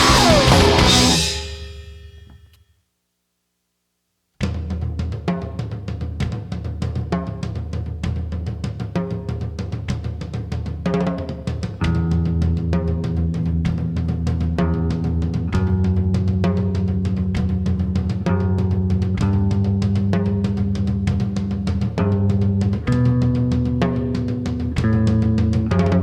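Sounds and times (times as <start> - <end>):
sustained chords: 0.0 - 1.6
band music with drum kit: 0.0 - 2.1, 4.4 - 26.0.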